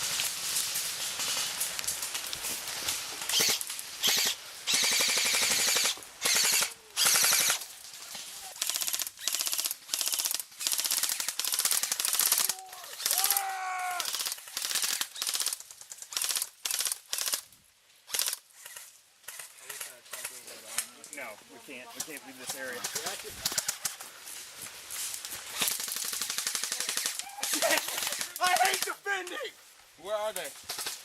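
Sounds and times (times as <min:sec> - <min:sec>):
airsoft guns firing bursts: 0:03.3 - 0:07.6, 0:08.6 - 0:13.1, 0:14.0 - 0:17.4, 0:25.6 - 0:29.0, 0:30.7 - 0:31.0
person shouting: 0:12.4 - 0:14.1.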